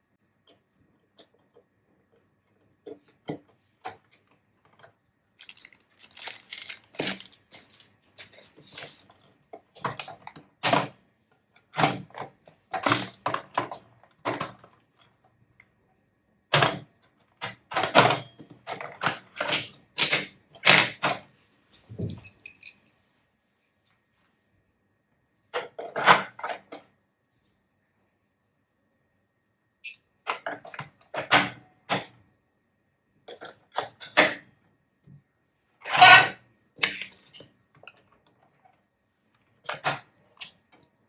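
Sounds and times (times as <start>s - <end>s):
toy packaging clicks and rustles: 5.4s - 9.1s.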